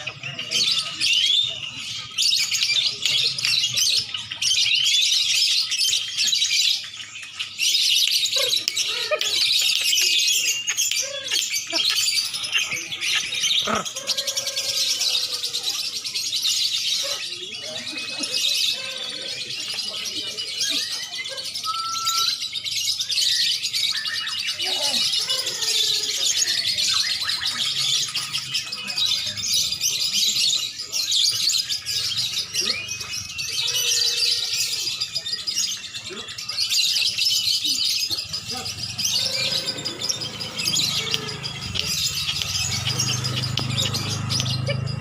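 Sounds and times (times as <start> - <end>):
songbirds chirping and trilling: 0.0 - 45.0
lower whistled bird notes: 21.6 - 22.4.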